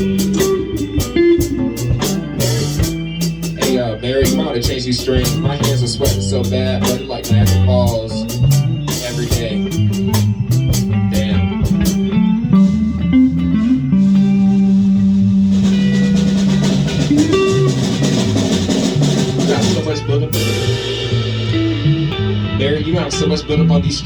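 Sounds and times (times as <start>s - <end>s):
drum kit: 0.0s - 23.3s
bass guitar: 0.0s - 24.0s
electric guitar: 0.0s - 24.0s
cymbal crash: 20.4s - 22.5s.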